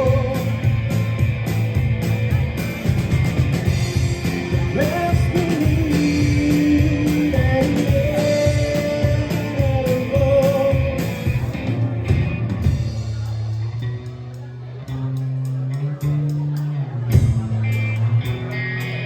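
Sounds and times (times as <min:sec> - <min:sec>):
bass guitar: 0:00.0 - 0:19.0
drums: 0:00.0 - 0:19.0
electric guitar: 0:00.0 - 0:19.0
person singing long notes: 0:04.1 - 0:11.5.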